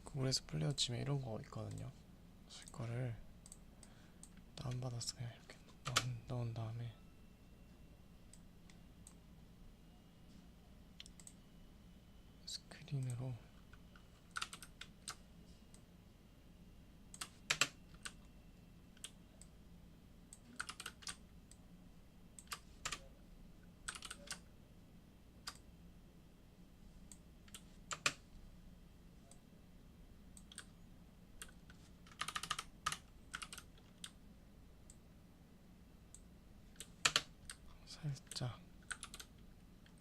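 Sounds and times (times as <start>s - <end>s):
faint low hum: 0.0s - 40.0s
keyboard keys clicking: 13.0s - 15.2s, 20.4s - 21.6s, 23.9s - 24.4s, 27.5s - 28.2s, 30.4s - 30.7s, 31.4s - 34.2s, 38.8s - 40.0s.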